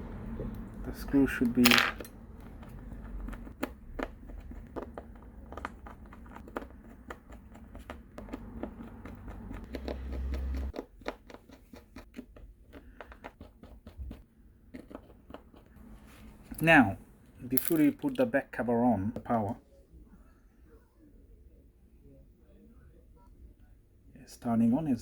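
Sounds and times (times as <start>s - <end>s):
low handling rumble: 0.0s - 3.5s.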